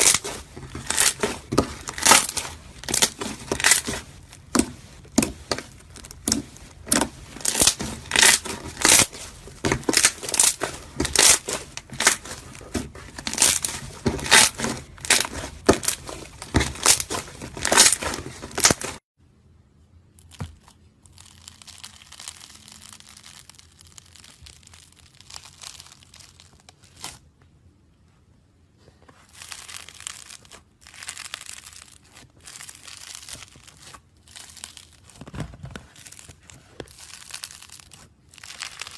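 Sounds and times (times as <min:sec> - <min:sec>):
slime crackling and popping: 0:00.0 - 0:19.0, 0:20.2 - 0:27.2, 0:29.3 - 0:38.9
slime squelching: 0:00.0 - 0:19.0.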